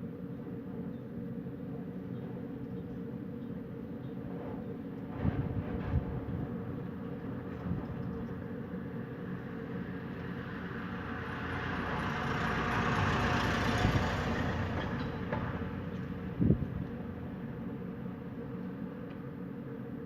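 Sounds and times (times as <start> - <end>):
wind rumbling: 11.5 - 17.5.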